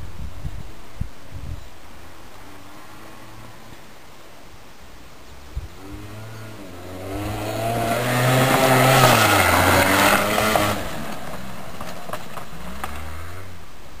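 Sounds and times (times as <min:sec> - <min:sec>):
vehicle engine passing by: 0:05.7 - 0:13.7.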